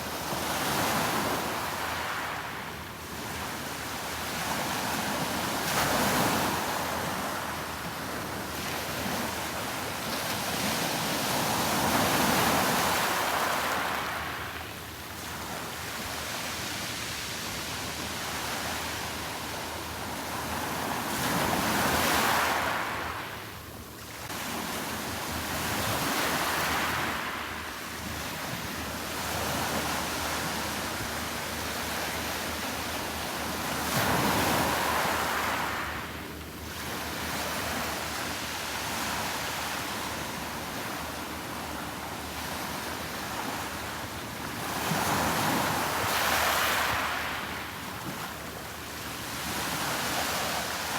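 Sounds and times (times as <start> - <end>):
sea surf breaking on beach: 24.2 - 41.8, 44.5 - 48.3.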